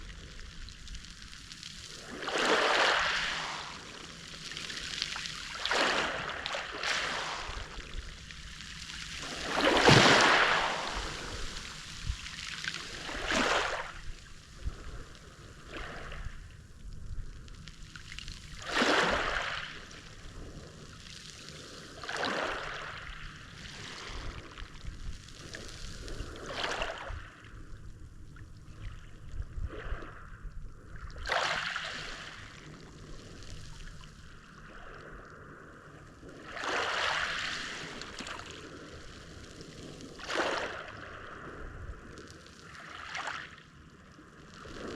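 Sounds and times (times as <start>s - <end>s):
sea waves breaking on shore: 1.8s - 16.4s, 18.1s - 20.8s, 21.4s - 24.8s, 31.2s - 32.8s, 36.3s - 41.7s.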